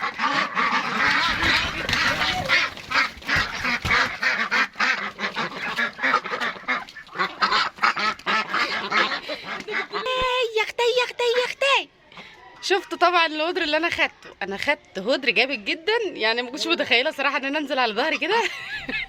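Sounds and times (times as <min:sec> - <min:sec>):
ducks quacking: 0:00.0 - 0:10.7.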